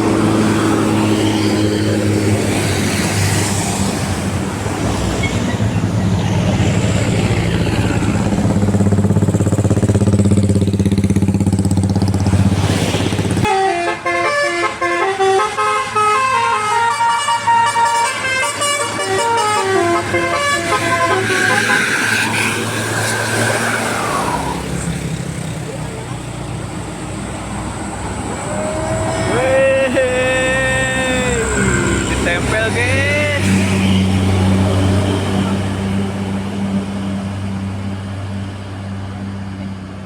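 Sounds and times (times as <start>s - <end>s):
bus engine running: 0.0s - 40.0s
road noise: 0.0s - 40.0s
multi-tone bus horn melody: 13.4s - 22.1s.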